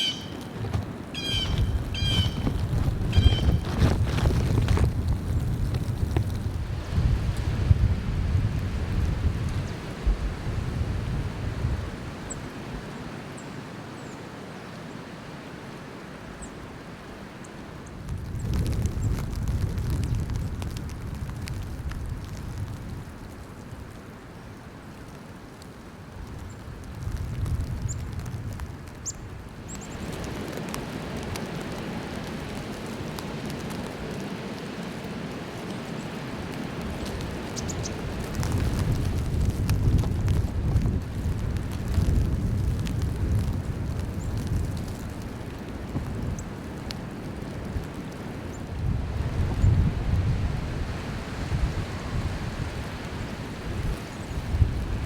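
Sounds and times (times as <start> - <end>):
small bird chip notes: 0.0 - 0.5
high bird chips: 0.0 - 0.6, 1.2 - 2.5
blizzard wind buffeting microphone: 0.0 - 13.2, 16.4 - 55.0.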